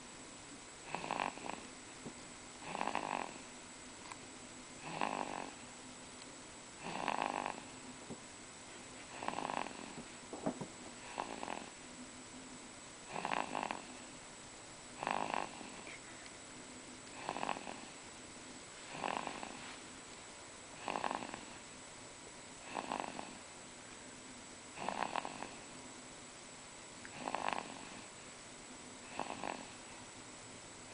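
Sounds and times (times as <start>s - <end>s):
baby snoring: 0.8s - 1.7s, 2.6s - 3.5s, 4.8s - 5.7s, 6.8s - 7.8s, 9.0s - 10.0s, 11.0s - 11.8s, 13.0s - 14.2s, 15.0s - 16.0s, 17.1s - 18.0s, 18.9s - 19.7s, 20.8s - 21.6s, 22.6s - 23.4s, 24.8s - 25.7s, 27.1s - 28.1s, 29.0s - 30.0s.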